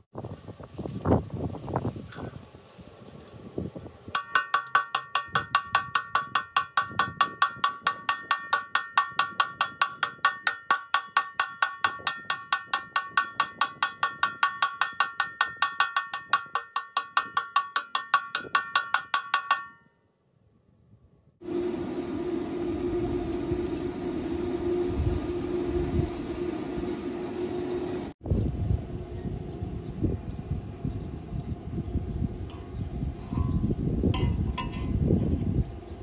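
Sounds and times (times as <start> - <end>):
rapid ringing metallic ticks: 4.1 - 19.9.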